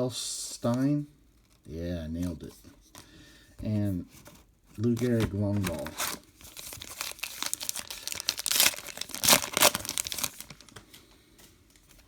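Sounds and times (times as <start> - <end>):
wrapper crinkling and tearing: 4.8 - 10.9.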